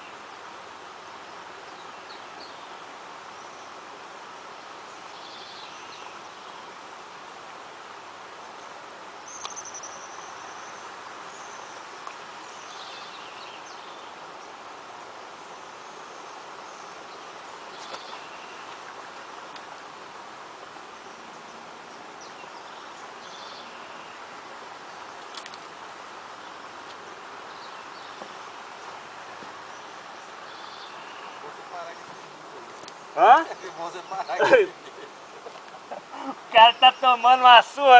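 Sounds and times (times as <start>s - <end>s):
birds chirping: 0.0s - 7.3s, 8.2s - 37.9s
steady hiss: 0.0s - 37.9s
faint clicks: 25.2s - 25.7s.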